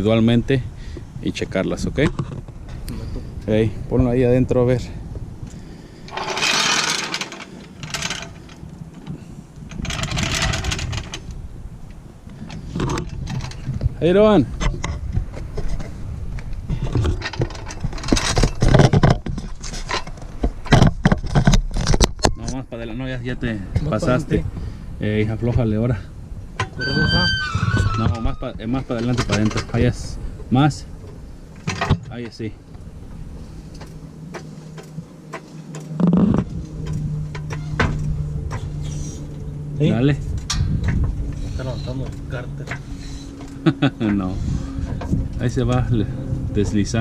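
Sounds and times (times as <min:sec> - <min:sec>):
floor jack clanking and scraping: 0:06.1 - 0:08.6
steady low hum: 0:22.6 - 0:47.0.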